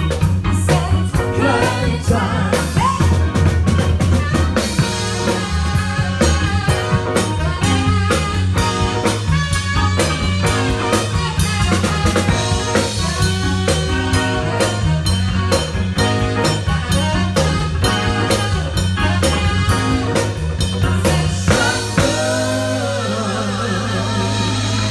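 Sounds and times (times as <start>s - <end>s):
music with drum beat and bass: 0.0s - 24.9s.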